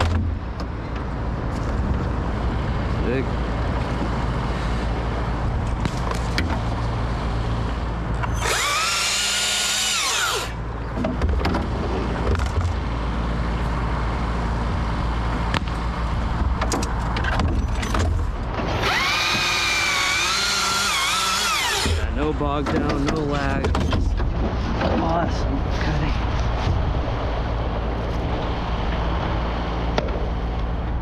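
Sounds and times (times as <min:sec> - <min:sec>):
chainsaw cutting wood: 0:08.2 - 0:10.6, 0:18.6 - 0:22.2
low rumble: 0:22.0 - 0:31.0.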